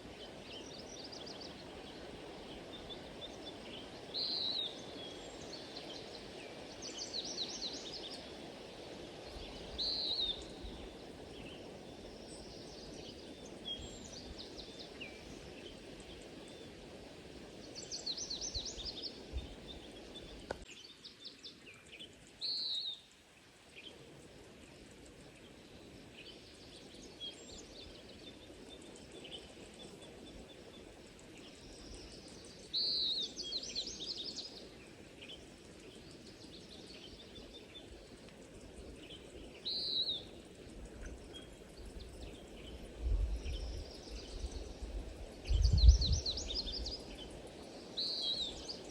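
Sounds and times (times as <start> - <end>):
songbird singing: 0.0 - 48.9.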